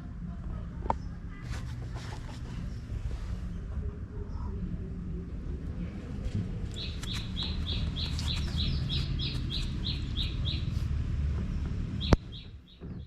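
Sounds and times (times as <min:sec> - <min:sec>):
small bird chirping: 0:06.7 - 0:10.9, 0:11.5 - 0:13.0.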